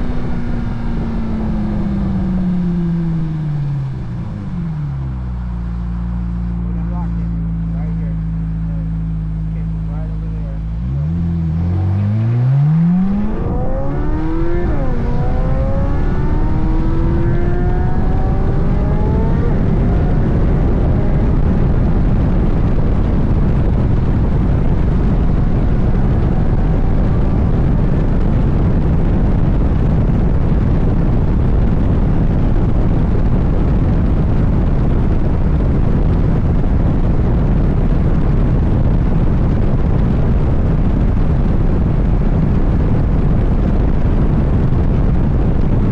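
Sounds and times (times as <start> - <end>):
car engine accelerating hard: 0.0 - 45.9
rushing noise at speed: 0.0 - 45.9.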